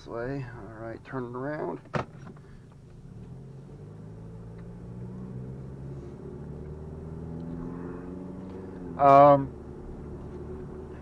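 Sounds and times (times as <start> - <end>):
car engine: 0.0 - 11.0
road noise: 0.0 - 11.0.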